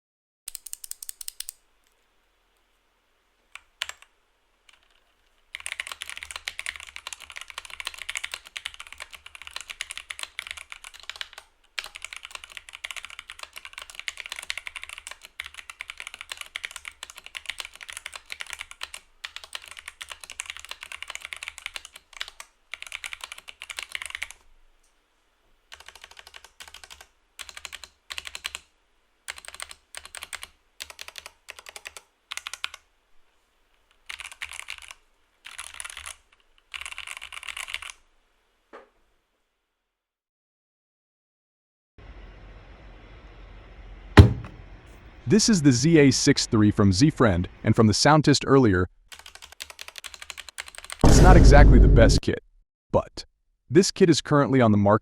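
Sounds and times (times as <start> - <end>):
mechanical keyboard typing: 0.5 - 1.6, 3.6 - 4.1, 4.7 - 24.4, 25.7 - 28.7, 29.3 - 32.8, 33.9 - 38.0, 49.1 - 51.0.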